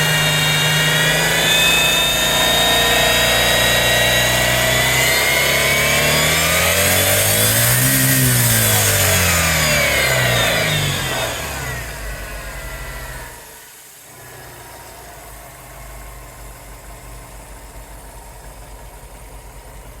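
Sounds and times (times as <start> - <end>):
engine idling: 0.0 - 20.0.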